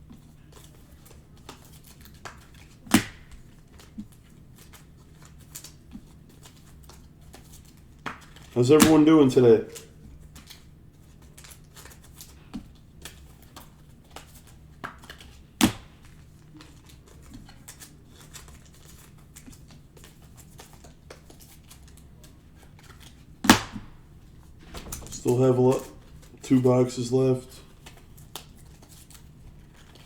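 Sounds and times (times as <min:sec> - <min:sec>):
sharp snap: 0:02.9 - 0:03.3, 0:08.8 - 0:09.1, 0:15.6 - 0:15.9, 0:23.4 - 0:24.0
card packs rustling: 0:03.8 - 0:12.5, 0:13.1 - 0:30.0
loud knock: 0:24.6 - 0:25.3.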